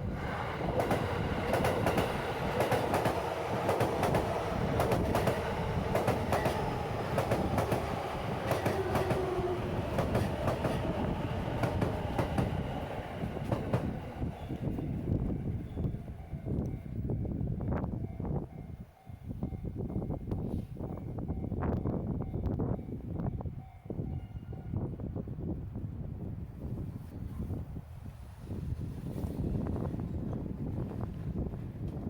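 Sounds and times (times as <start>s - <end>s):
electric train rumbling: 0.0s - 24.3s
wheels clacking over rail joints: 0.6s - 14.4s.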